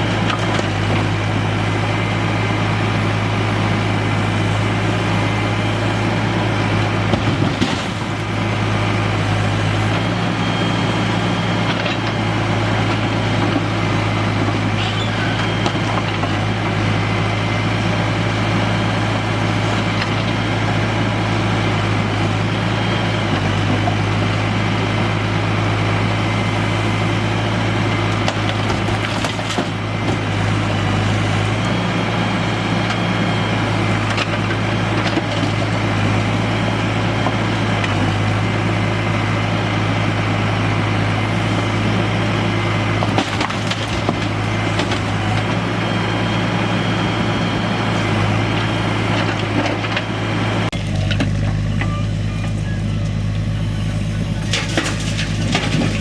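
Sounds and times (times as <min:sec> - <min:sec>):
heavy diesel engine running: 0:00.0 - 0:56.0
stones rattling and scraping: 0:28.2 - 0:30.2, 0:43.0 - 0:45.7, 0:54.4 - 0:56.0.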